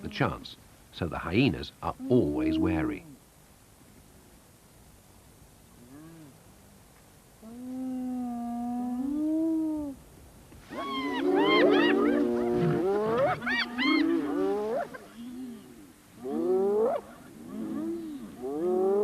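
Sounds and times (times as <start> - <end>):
hyena whining call: 10.6 - 19.0
hyenas rising cries: 10.7 - 19.0.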